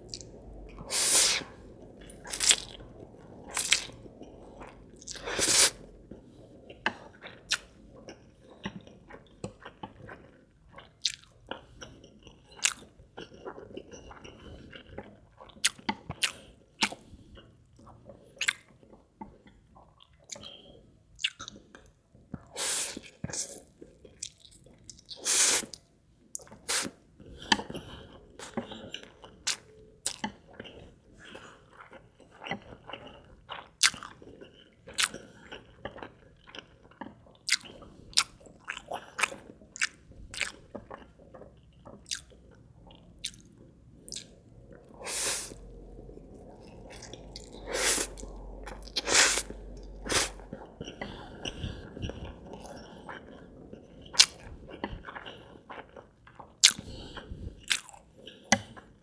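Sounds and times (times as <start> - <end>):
chewing and slurping noodles: 0.0 - 25.8, 26.4 - 59.0
wet mouth clicks and smacks: 54.2 - 54.4.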